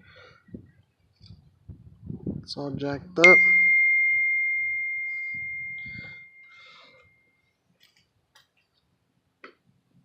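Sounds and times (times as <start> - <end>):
single ringing tone: 3.2 - 7.4.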